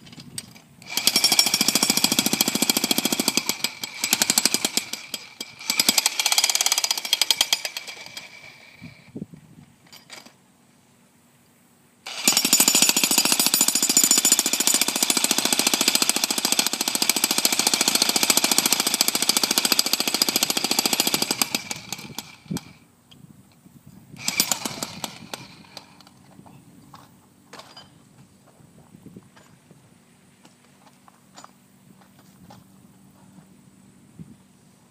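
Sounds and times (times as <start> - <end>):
jackhammer hammering: 0.8 - 8.8, 12.1 - 22.8, 24.2 - 26.0.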